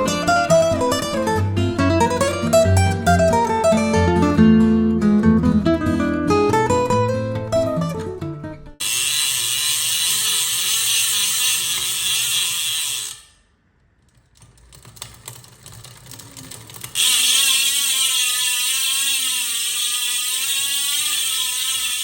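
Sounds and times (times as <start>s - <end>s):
bicycle freehub buzzing: 8.8s - 13.6s, 14.4s - 22.0s.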